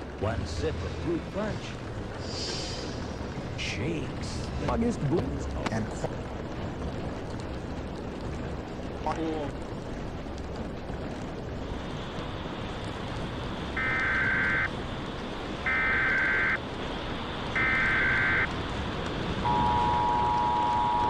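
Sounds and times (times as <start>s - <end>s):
steady rain: 0.0s - 21.0s
screeching data bursts: 13.7s - 14.7s, 15.7s - 16.6s, 17.5s - 18.5s, 19.4s - 21.0s
two-tone attention signal: 17.6s - 18.5s, 19.4s - 21.0s.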